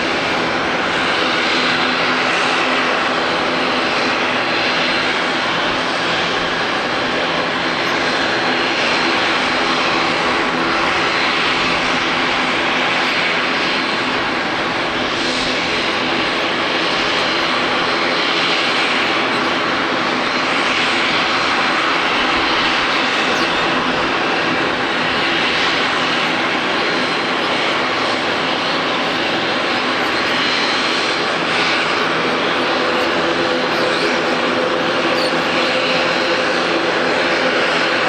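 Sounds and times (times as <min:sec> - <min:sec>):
high engine whine: 0:00.0 - 0:38.0
jet engine roar: 0:00.0 - 0:38.0.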